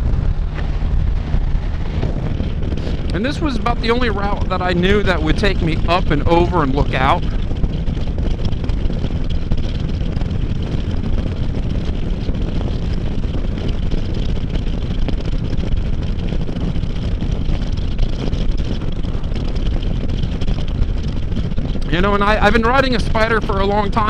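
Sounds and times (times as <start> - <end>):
motorcycle engine cruising: 0.0 - 24.0
wind noise on microphone: 0.0 - 24.0.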